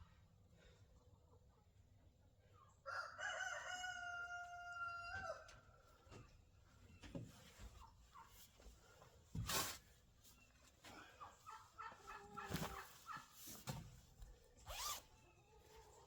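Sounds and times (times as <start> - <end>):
chickens clucking: 7.0 - 8.6, 10.9 - 13.9.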